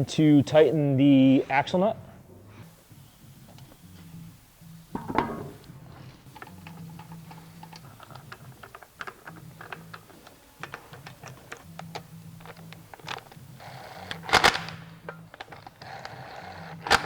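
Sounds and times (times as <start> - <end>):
socket ratchet clicking: 6.3 - 17.0.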